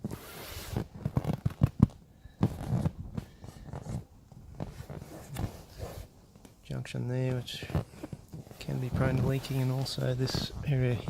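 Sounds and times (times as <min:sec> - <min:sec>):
handling noise rustling: 0:00.0 - 0:06.6, 0:07.2 - 0:11.0.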